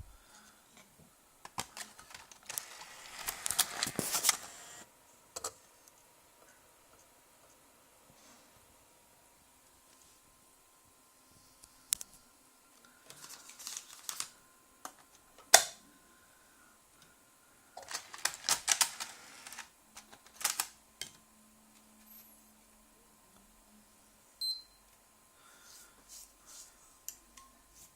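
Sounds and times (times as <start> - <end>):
faint low hum: 0.0 - 27.9
disc drive clicking and rattling: 1.4 - 4.8, 17.8 - 20.8
short high beep: 24.4 - 24.8.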